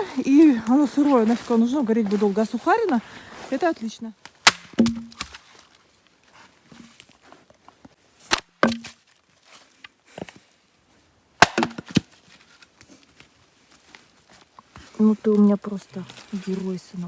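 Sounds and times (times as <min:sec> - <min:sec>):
axe chopping wood: 0:04.4 - 0:05.4, 0:08.3 - 0:09.0, 0:11.4 - 0:12.1.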